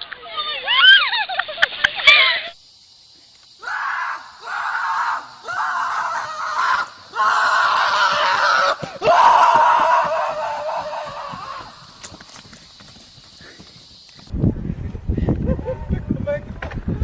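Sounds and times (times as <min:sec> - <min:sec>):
person screaming: 0:03.6 - 0:11.8.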